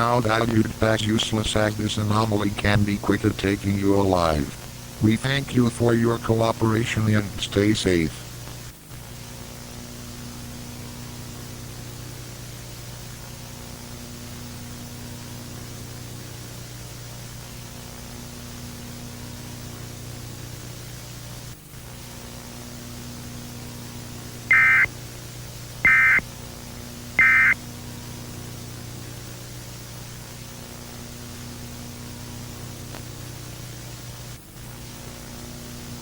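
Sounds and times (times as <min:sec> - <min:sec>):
low steady hum: 0:00.0 - 0:08.4
broadcast static hiss: 0:00.0 - 0:36.0
shrill electronic data bursts: 0:24.5 - 0:24.9, 0:25.9 - 0:26.2, 0:27.2 - 0:27.6.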